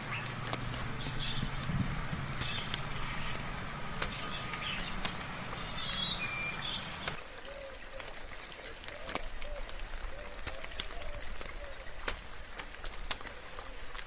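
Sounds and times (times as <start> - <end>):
low steady hum: 0.0 - 7.2
birds chirping: 0.0 - 8.1, 8.8 - 13.5
rain hiss: 0.0 - 14.0.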